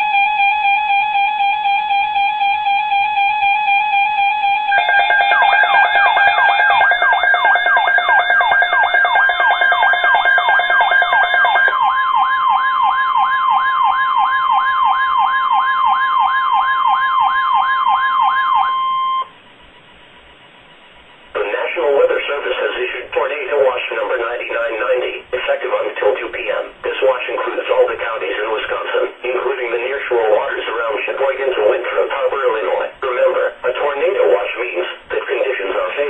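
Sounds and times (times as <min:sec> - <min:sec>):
steady alert tones: 0:00.0 - 0:13.1
electronic siren warbling: 0:00.0 - 0:19.3
steady warning tone: 0:00.0 - 0:19.4.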